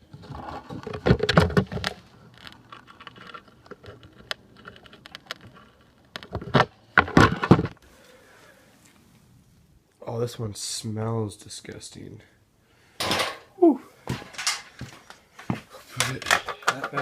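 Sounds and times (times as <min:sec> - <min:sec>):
speaker wires and hardware handled: 0:00.0 - 0:07.8, 0:14.1 - 0:17.0.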